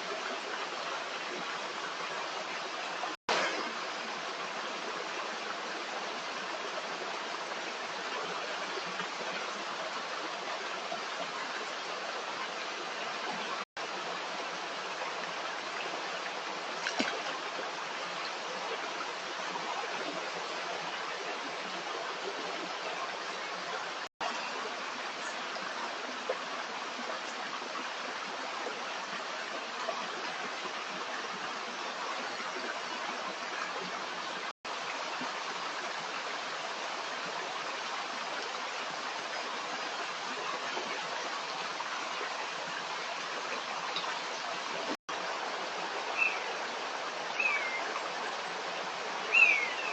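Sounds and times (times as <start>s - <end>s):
stream water rushing: 0.0s - 49.9s.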